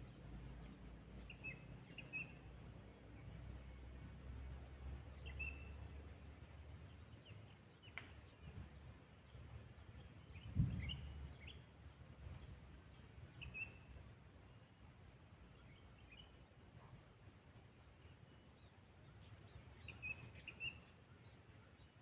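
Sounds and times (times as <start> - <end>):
bird chirps: 0.0 - 3.8, 5.1 - 6.0, 6.9 - 14.0, 15.5 - 16.4, 18.0 - 22.0.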